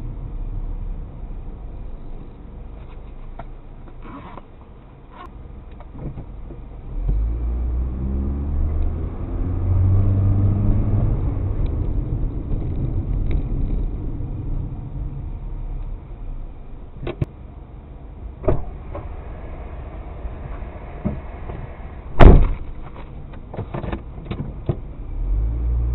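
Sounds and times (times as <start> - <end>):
road rumble: 0.0 - 25.9
car engine accelerating: 6.7 - 17.0, 18.3 - 23.5, 24.8 - 25.9.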